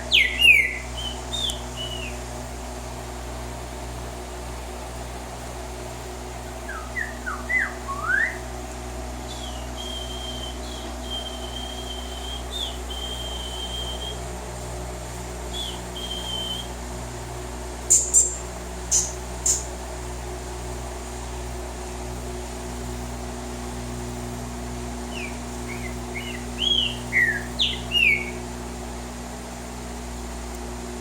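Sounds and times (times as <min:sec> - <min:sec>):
person whistling: 0:09.8 - 0:14.2
sharp high chirps: 0:17.9 - 0:19.7, 0:25.1 - 0:28.4.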